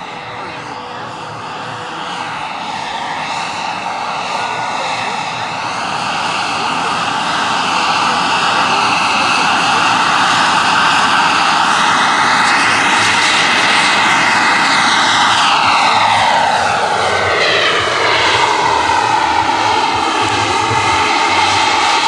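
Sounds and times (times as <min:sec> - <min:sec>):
model helicopter turbine whine: 0:00.0 - 0:22.0.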